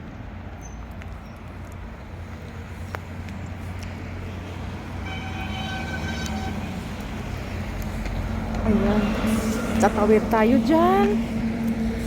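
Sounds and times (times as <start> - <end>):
vehicle rumble passing: 0.0 - 12.0
high horn-like tone: 5.0 - 6.8.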